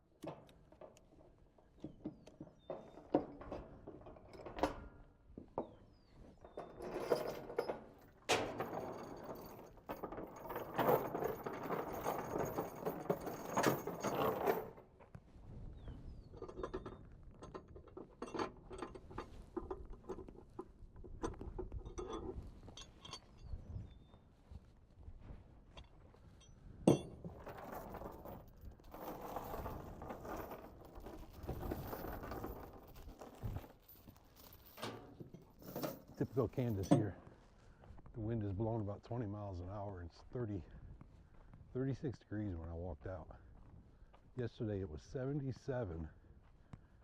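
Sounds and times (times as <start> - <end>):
metal hooks and buckles clinking: 6.4 - 14.8, 16.2 - 24.1, 25.7 - 37.3.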